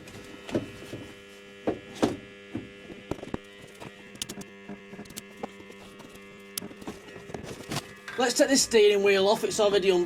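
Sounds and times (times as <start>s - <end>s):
welder humming: 0.0s - 10.0s
arc welder clicks and spits: 2.6s - 8.2s.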